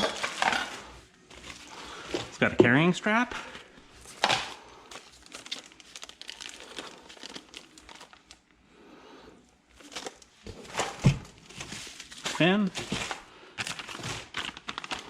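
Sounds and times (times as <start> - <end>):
plastic packaging crinkling: 3.4 - 8.5, 9.7 - 15.0.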